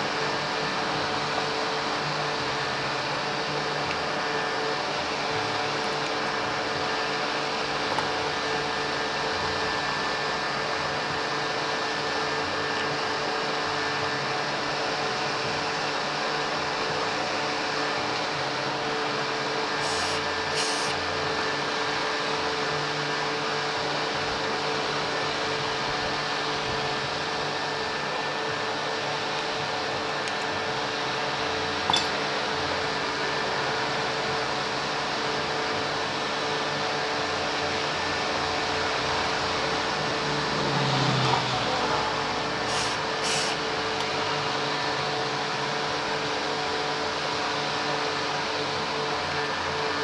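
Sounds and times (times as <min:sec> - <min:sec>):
fan humming with hiss: 0:00.0 - 0:50.0
short high hisses: 0:19.8 - 0:21.0, 0:42.7 - 0:43.6.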